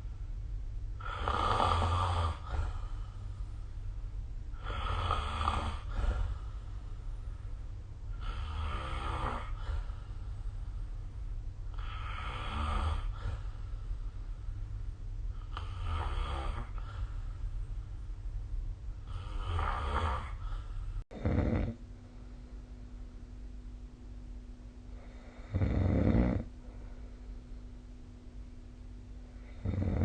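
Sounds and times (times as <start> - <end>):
low hum: 0.0 - 1.1, 2.3 - 4.6, 5.8 - 8.9, 9.5 - 12.2, 12.8 - 15.8, 16.6 - 19.2, 21.8 - 25.5, 26.4 - 29.6
person snoring: 1.0 - 3.2, 4.6 - 6.7, 8.1 - 10.2, 11.7 - 13.7, 15.4 - 17.2, 19.0 - 21.8, 25.0 - 26.5, 29.4 - 30.0.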